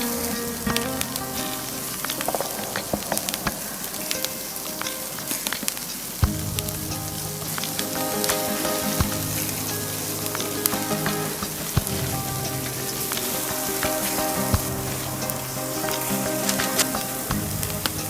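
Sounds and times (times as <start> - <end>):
faint background music: 0.0 - 18.0
wood fire crackling: 0.0 - 18.0.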